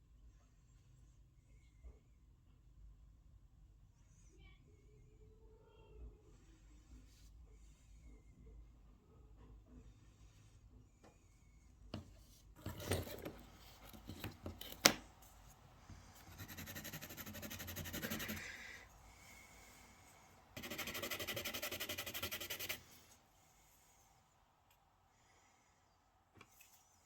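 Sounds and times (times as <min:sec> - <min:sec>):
file rasping on metal: 0:16.3 - 0:18.6, 0:20.6 - 0:22.8.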